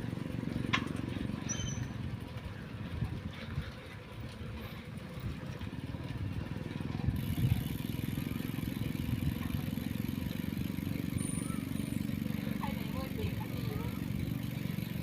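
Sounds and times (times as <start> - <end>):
wind buffeting microphone: 1.9 - 10.0.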